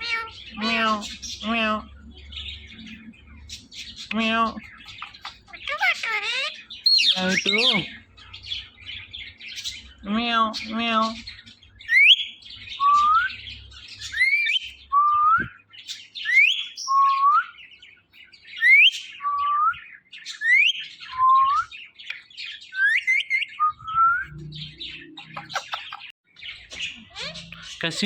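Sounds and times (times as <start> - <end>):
faint birds chirping: 0.0 - 28.0.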